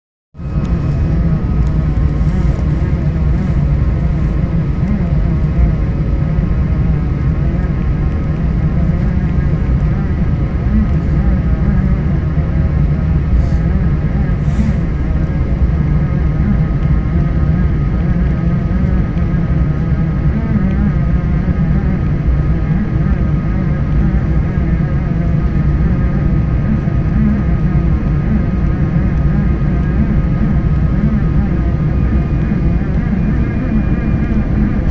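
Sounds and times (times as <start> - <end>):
airplane engines rumbling: 0.4 - 34.9
faint high whining tones: 0.4 - 34.9.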